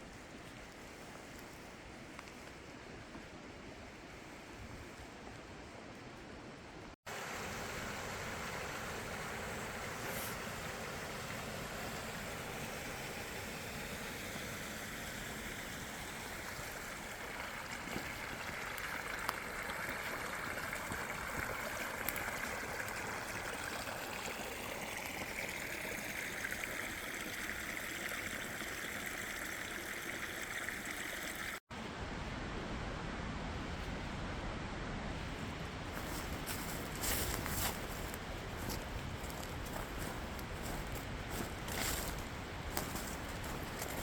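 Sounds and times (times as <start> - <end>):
stream water flowing: 5.5 - 31.8, 35.2 - 44.0.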